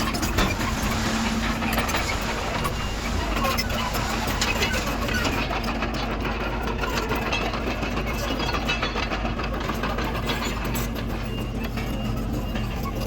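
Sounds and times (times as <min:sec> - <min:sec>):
diesel engine drone: 0:00.0 - 0:05.9
rapid machinery clatter: 0:00.0 - 0:13.0.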